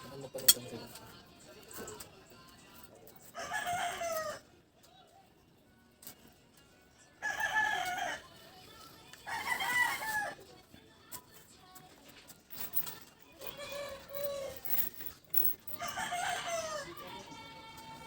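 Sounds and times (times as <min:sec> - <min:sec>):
rooster crowing: 0:03.4 - 0:04.4, 0:07.2 - 0:08.3, 0:09.3 - 0:10.4, 0:13.5 - 0:14.7, 0:15.8 - 0:17.2.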